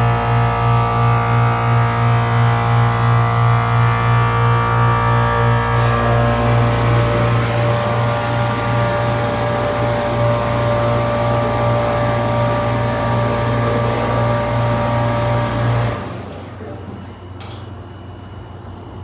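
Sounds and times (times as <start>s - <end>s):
hydraulic elevator motor humming: 4.6s - 19.0s.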